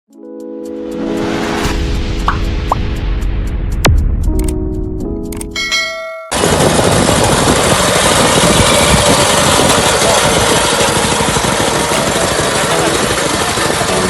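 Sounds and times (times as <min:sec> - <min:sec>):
music sting: 0:00.8 - 0:05.3
farm machine engine running: 0:06.3 - 0:14.0.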